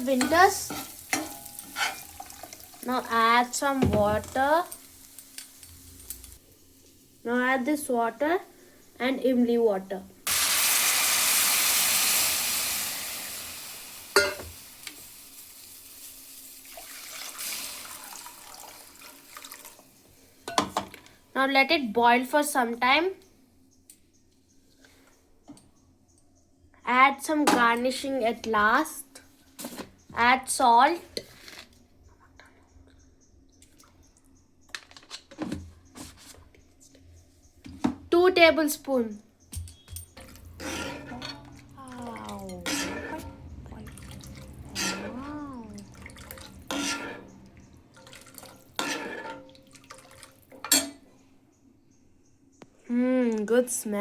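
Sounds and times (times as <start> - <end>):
liquid sizzling in hot pan: 0.0 - 9.0, 10.2 - 19.9.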